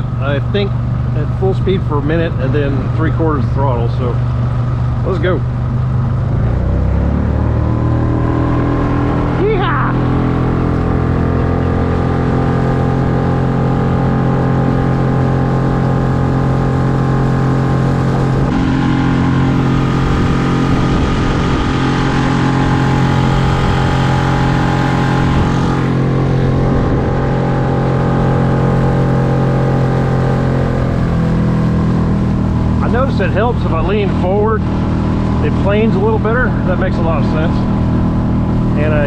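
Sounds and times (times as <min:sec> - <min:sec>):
outboard motor droning: 0:00.0 - 0:39.0.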